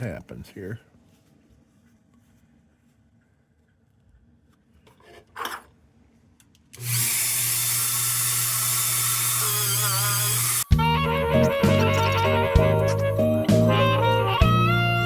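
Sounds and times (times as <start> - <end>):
wire wheel power tool whirring: 6.7 - 10.8.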